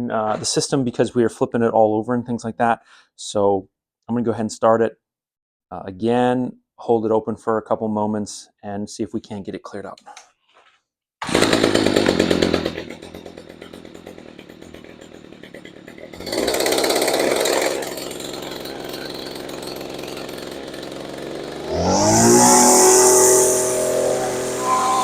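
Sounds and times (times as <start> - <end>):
string trimmer engine revving: 11.2 - 25.0.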